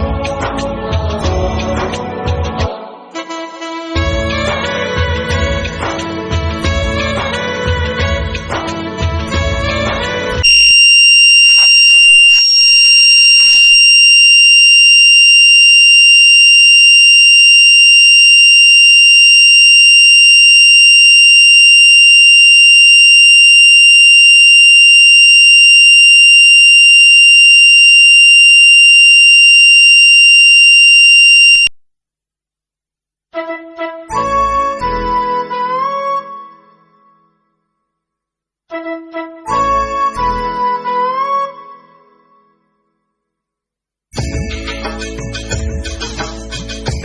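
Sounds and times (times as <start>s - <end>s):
fire alarm buzzer high tone: 10.4s - 31.7s.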